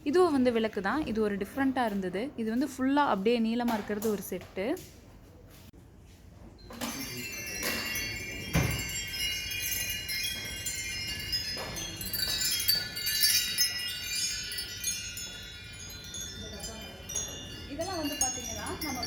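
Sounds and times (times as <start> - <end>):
wind chimes jingling: 6.6 - 19.0
sharp chime strike: 6.7 - 19.0.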